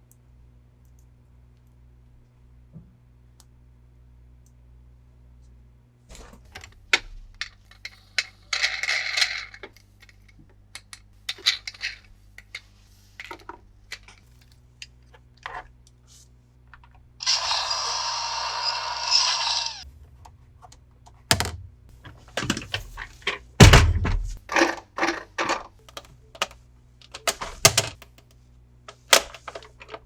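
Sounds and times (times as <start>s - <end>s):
plastic toy parts clicking: 24.5s - 28.3s, 28.9s - 30.0s.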